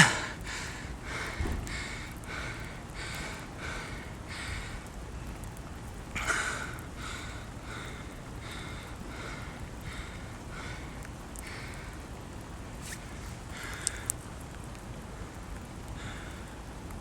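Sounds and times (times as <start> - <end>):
man breathing hard: 0.0 - 4.9, 6.2 - 12.0, 16.0 - 16.7.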